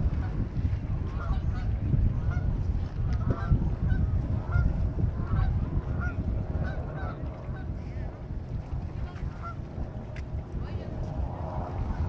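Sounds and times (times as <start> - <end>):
steady low rumble: 0.0 - 12.0.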